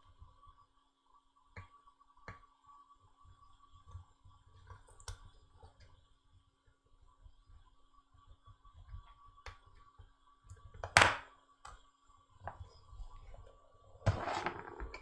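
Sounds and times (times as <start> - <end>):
objects clattering: 14.0 - 15.0.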